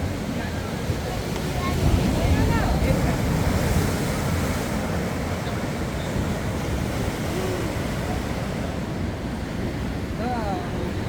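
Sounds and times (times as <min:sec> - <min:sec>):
deep rumble of surf: 0:00.0 - 0:11.0
surf breaking waves: 0:00.0 - 0:11.0.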